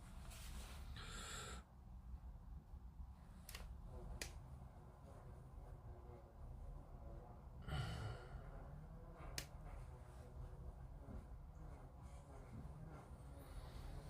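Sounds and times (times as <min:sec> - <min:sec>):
faint low hum: 0:00.0 - 0:14.0
person exhaling: 0:00.9 - 0:01.7, 0:07.6 - 0:08.5.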